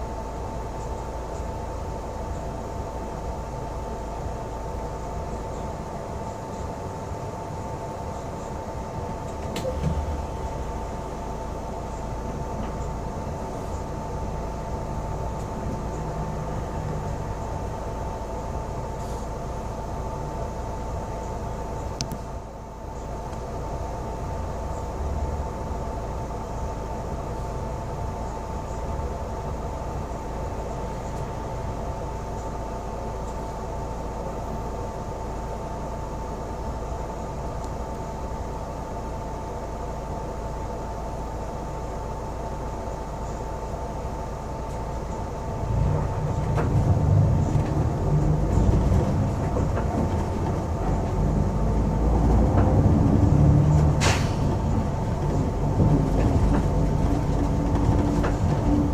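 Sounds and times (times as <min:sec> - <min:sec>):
bus engine and road rumble: 0:00.0 - 0:58.9.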